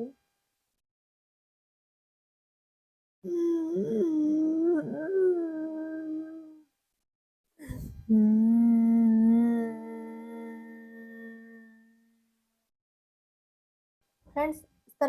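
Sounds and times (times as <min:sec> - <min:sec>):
woman humming: 0:03.3 - 0:06.7, 0:07.6 - 0:12.2.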